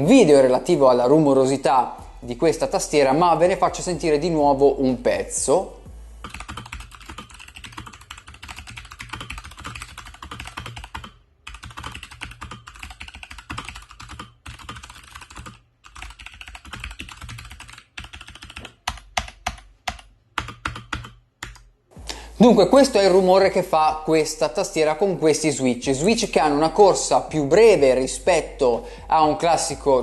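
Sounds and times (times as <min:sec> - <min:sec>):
typing on clicky mechanical keyboard: 0:06.3 - 0:21.6.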